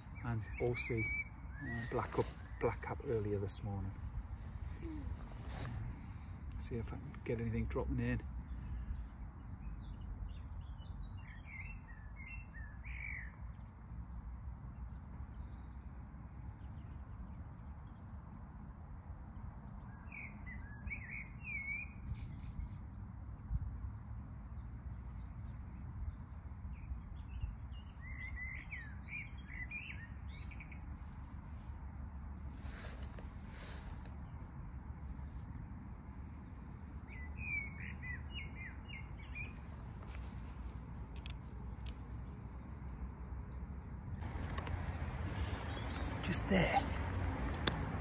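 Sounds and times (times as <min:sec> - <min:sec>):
songbird warbling: 0:00.0 - 0:03.2.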